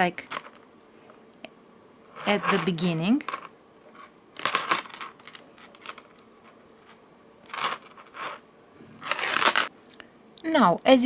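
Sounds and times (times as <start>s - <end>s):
thread rustling and clicking: 0.2s - 0.9s, 1.9s - 8.4s, 9.0s - 9.7s
scratchy swishes: 2.2s - 2.8s.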